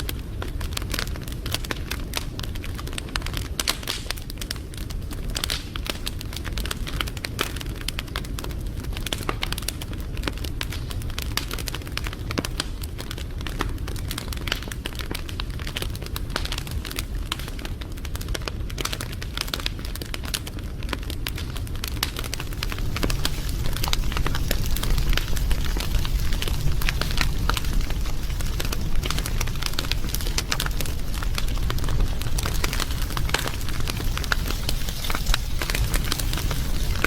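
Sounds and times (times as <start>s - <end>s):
wood fire crackling: 0.0s - 37.0s.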